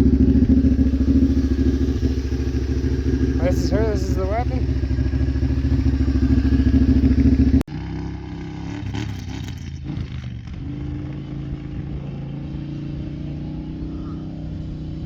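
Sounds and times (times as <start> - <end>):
atv engine idling loudly: 0.0 - 8.8
steady engine drone: 0.0 - 15.0.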